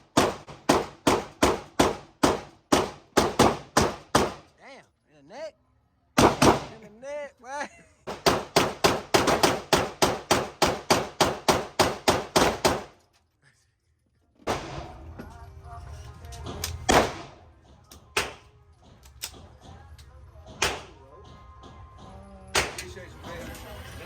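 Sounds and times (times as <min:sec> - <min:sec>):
rapid gunfire: 0:00.0 - 0:04.4, 0:06.2 - 0:06.8, 0:08.1 - 0:12.9, 0:20.6 - 0:21.0
single sharp gunshots: 0:00.0 - 0:04.4, 0:06.2 - 0:06.8, 0:08.1 - 0:12.9, 0:14.5 - 0:15.0, 0:16.9 - 0:17.4, 0:20.6 - 0:21.0, 0:22.6 - 0:22.9.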